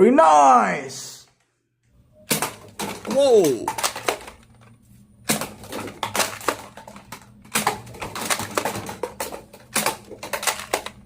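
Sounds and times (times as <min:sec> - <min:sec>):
plastic toys clicking and clattering: 0:02.3 - 0:11.0.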